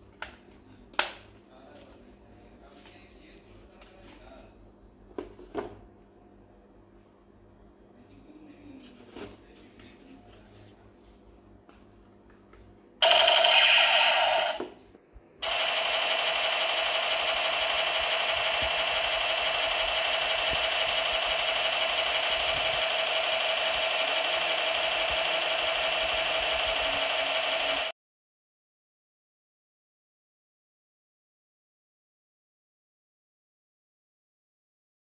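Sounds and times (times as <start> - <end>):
toy gun electronic sound effect: 13.0 - 14.7, 15.4 - 27.9.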